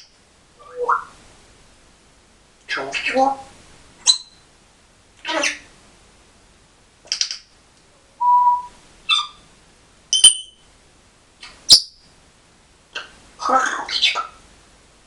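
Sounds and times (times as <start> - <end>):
parrot whistling and calling: 0.6 - 1.2, 4.0 - 4.4, 8.2 - 9.4, 10.1 - 10.6, 13.8 - 14.4.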